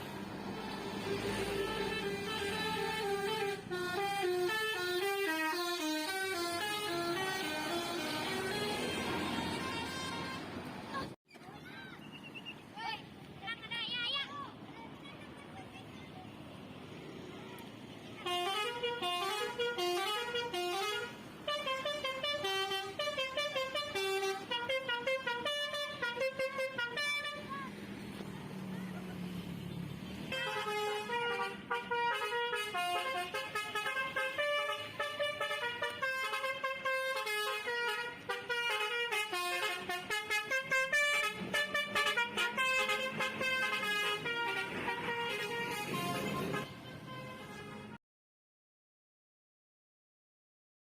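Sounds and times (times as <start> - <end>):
bus horn playing a tune: 0.4 - 10.6, 18.2 - 27.6, 30.2 - 48.0.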